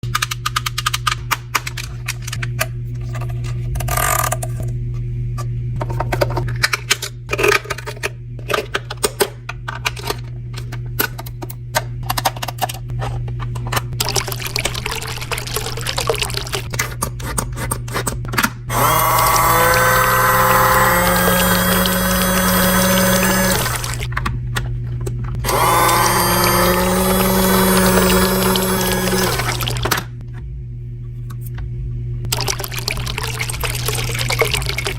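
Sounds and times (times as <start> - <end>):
washing machine motor hum: 1.1 - 34.9
water running in: 14.0 - 16.7, 18.7 - 24.1, 25.4 - 30.1, 32.3 - 34.9.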